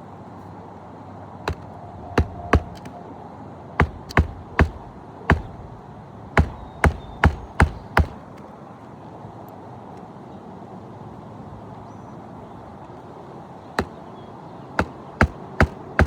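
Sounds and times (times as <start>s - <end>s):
hammer blows: 1.5s - 3.0s, 3.8s - 5.8s, 6.4s - 8.3s, 14.8s - 16.0s.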